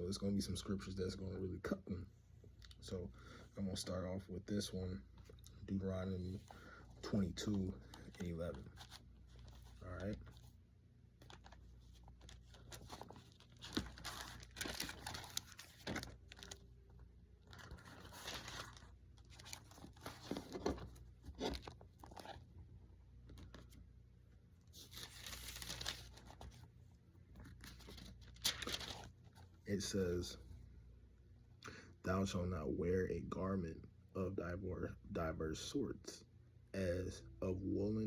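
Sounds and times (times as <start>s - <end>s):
book pages flipping: 11.2s - 16.6s, 17.4s - 22.5s, 24.7s - 26.7s, 27.3s - 29.5s.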